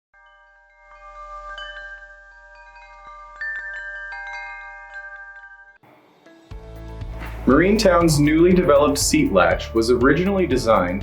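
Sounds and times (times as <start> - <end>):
chime tones ringing: 0.2 - 6.4.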